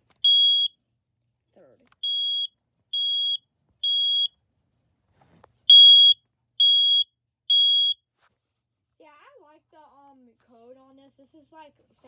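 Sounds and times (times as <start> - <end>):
smoke alarm beeping: 0.2 - 0.7, 2.0 - 4.3, 5.7 - 8.0.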